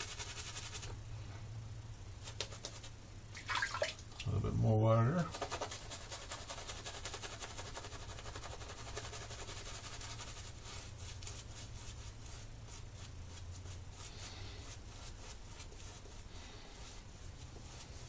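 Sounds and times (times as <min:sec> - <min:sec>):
shaving brush whisking lather: 0:00.0 - 0:00.9, 0:05.2 - 0:18.0.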